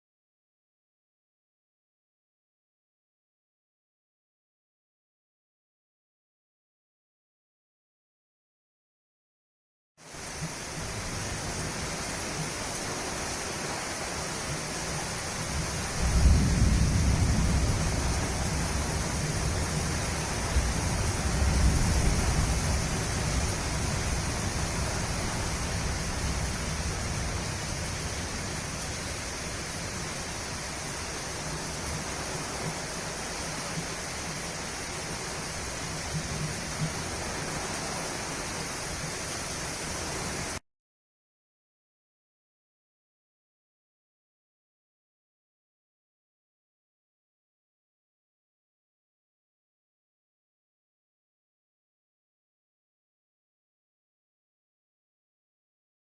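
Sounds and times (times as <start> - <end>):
steady rain: 10.0 - 40.6
distant thunder rumble: 15.5 - 30.6.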